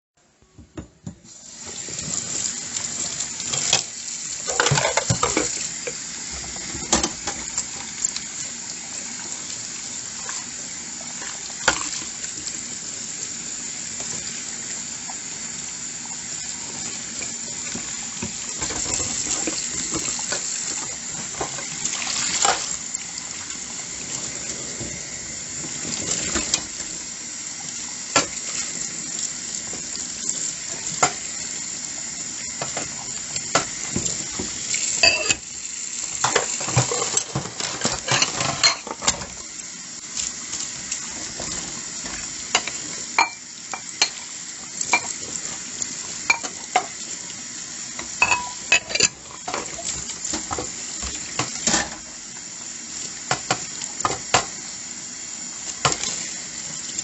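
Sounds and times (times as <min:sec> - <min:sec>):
tap water running into sink: 0:00.8 - 0:57.0
dishes clinking together: 0:35.0 - 0:35.4, 0:48.2 - 0:49.2.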